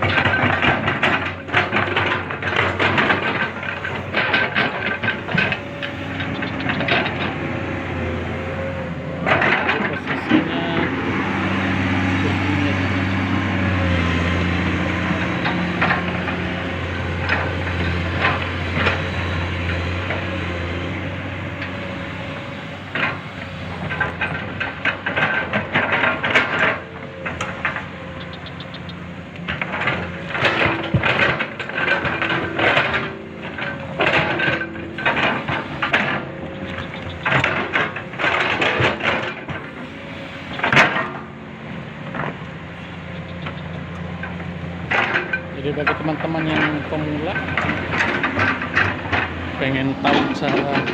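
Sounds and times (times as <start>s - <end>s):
scraping and clattering: 0.0s - 7.4s, 22.9s - 41.3s, 43.2s - 50.9s
excavator engine running: 0.0s - 50.9s.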